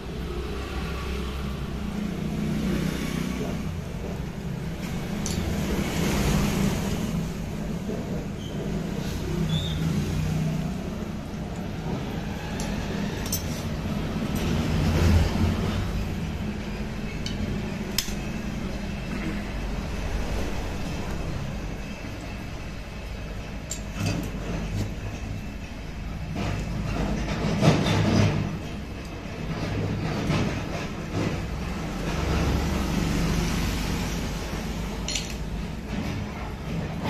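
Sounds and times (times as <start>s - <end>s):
low rumble of traffic: 0.0s - 37.0s
metallic clinks of tools: 35.1s - 35.4s.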